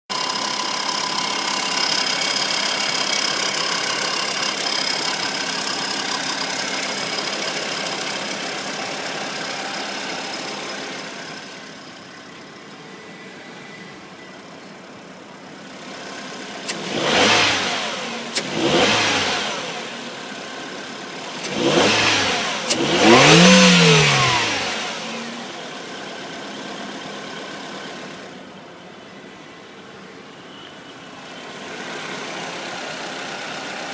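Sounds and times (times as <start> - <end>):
car engine whining: 0.1 - 33.9
car engine revving: 15.7 - 27.0.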